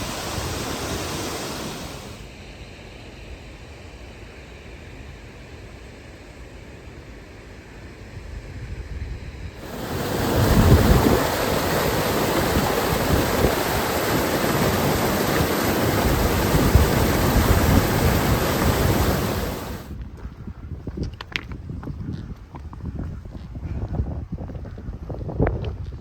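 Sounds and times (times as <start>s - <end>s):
rushing water: 0.0s - 2.2s, 9.6s - 19.9s.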